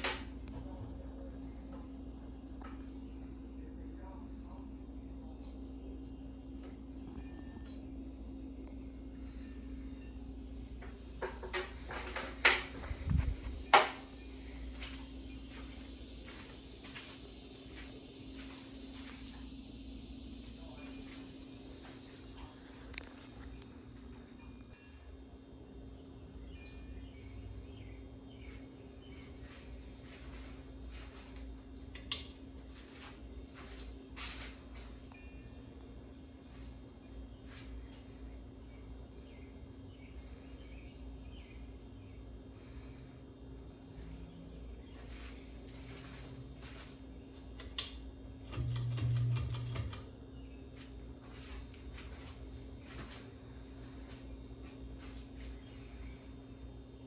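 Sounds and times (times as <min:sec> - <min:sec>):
ceiling fan motor hum: 0:00.0 - 0:57.0
fan pull chain clicking: 0:47.6 - 0:50.1.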